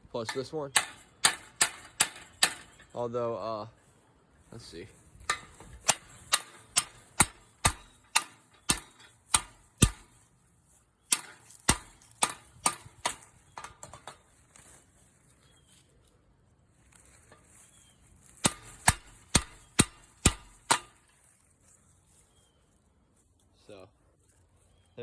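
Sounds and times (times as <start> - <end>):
hammer tapping metal fitting: 0.2 - 2.8, 5.3 - 10.1.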